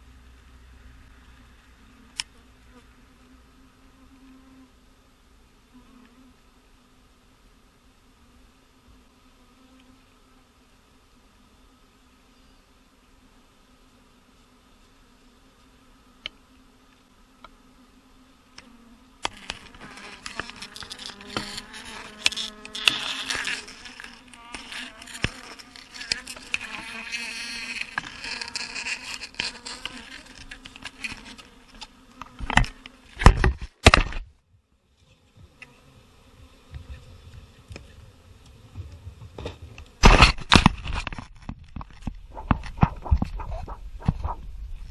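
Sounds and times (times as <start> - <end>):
bees buzzing: 11.1 - 34.1
rumbling bursts on microphone: 41.6 - 44.9.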